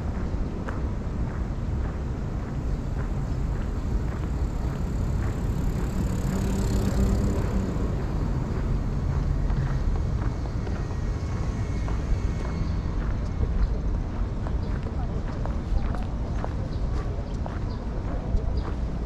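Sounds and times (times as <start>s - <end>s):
city traffic rumble: 0.0s - 19.0s
vehicle passing close by: 4.3s - 13.5s.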